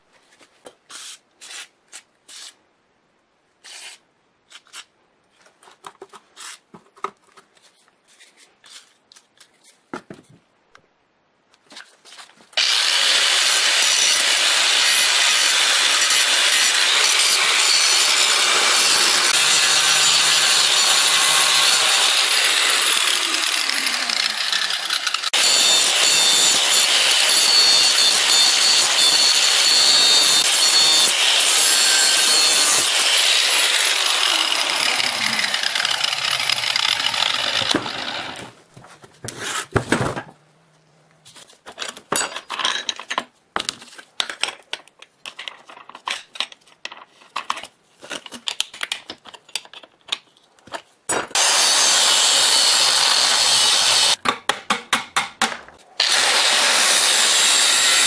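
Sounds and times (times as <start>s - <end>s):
power tool running under load: 12.6s - 38.5s, 51.3s - 54.2s, 56.0s - 58.0s.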